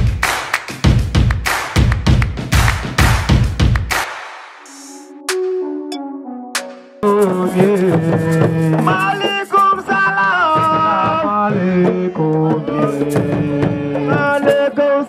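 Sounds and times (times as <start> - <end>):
melody over percussion: 4.6 - 9.8.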